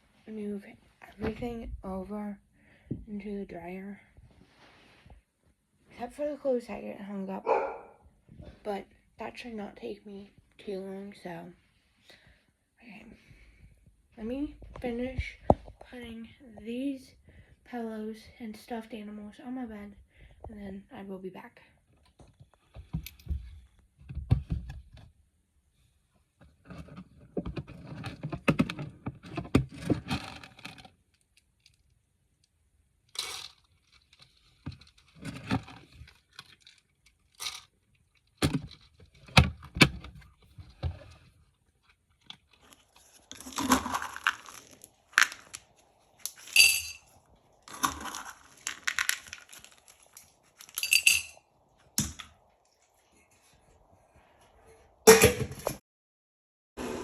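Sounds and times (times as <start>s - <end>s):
metallic jangling and clinking: 46.3s - 47.1s, 50.6s - 51.4s.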